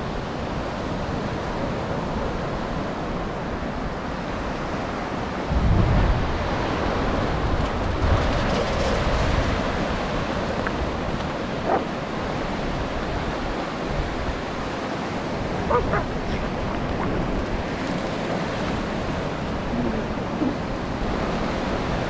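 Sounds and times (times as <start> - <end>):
surf washing up a beach: 0.0 - 22.0
wind buffeting microphone: 4.7 - 22.0.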